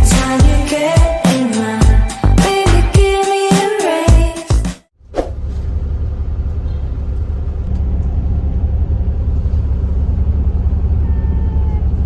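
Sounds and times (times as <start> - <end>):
vehicle rumbling: 4.9 - 12.0.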